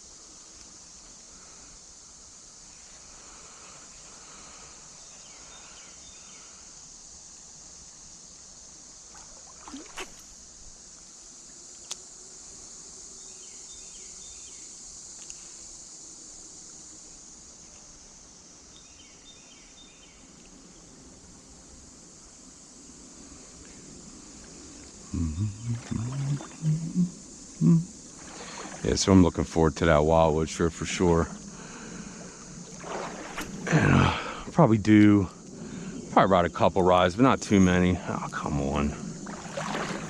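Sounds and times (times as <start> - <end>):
creek water running: 8.8 - 12.0, 23.3 - 40.0.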